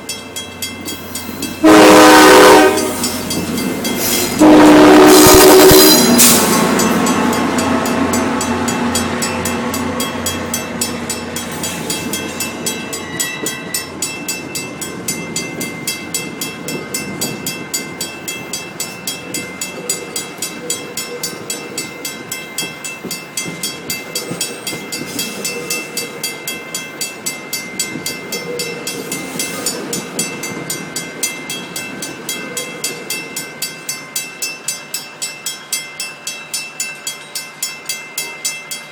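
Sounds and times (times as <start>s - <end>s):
passing train rumble: 0.0s - 38.9s
train horn blast: 1.6s - 3.0s, 4.3s - 6.3s.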